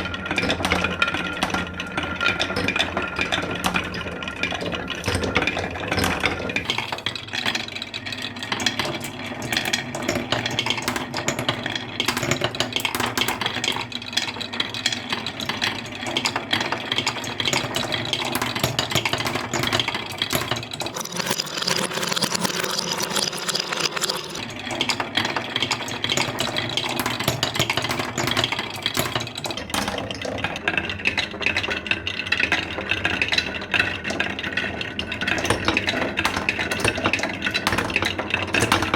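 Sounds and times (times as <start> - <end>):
marbles rattling down wooden track: 18.2 - 24.5.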